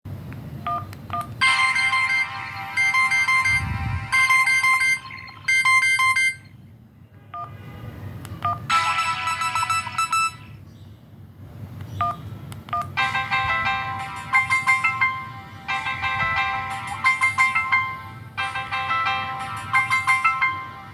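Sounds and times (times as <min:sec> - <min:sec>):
mobile phone ringtone melodies: 0:00.7 - 0:06.5, 0:08.5 - 0:10.6, 0:12.8 - 0:20.9.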